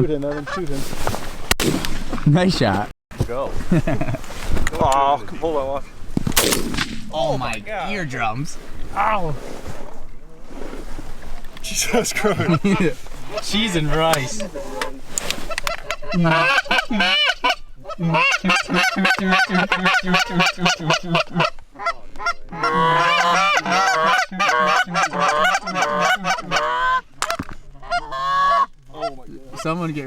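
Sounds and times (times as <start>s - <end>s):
goose honking and clucking: 12.2s - 30.0s.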